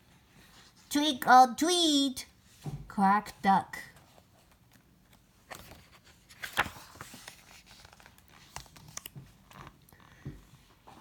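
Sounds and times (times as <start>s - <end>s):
paper rustling: 4.1s - 9.7s.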